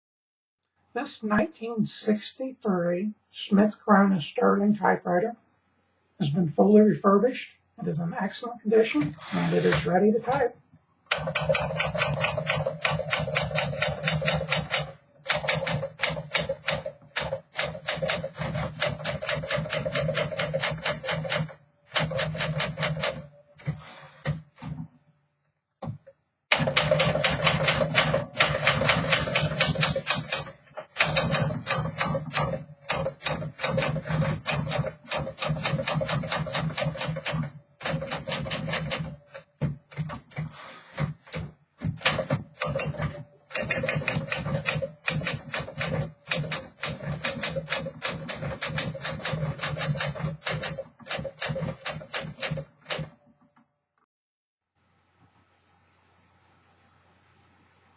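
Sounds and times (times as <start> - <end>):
manual typewriter typing: 9.3 - 10.4, 11.1 - 23.3, 26.5 - 53.2.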